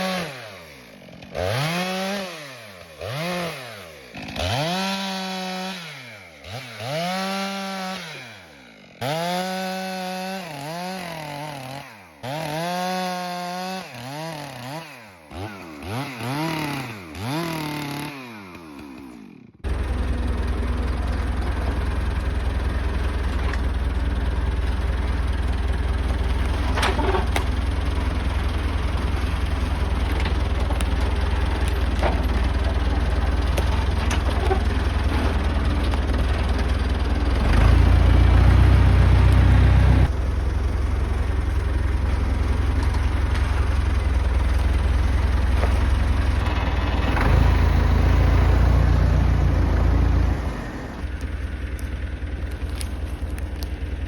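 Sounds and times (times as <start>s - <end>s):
engine idling: 19.6s - 54.0s.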